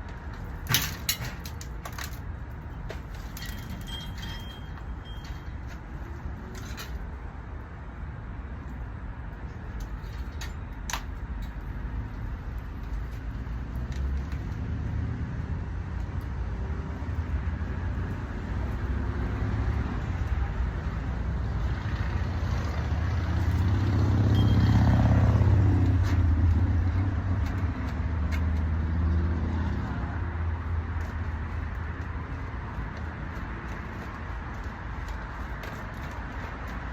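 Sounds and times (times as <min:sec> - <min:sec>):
road vehicle passing by: 0:11.6 - 0:36.9.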